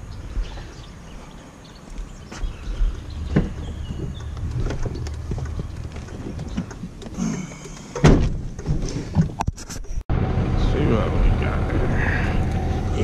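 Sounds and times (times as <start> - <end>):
low steady rumble: 10.1 - 13.0.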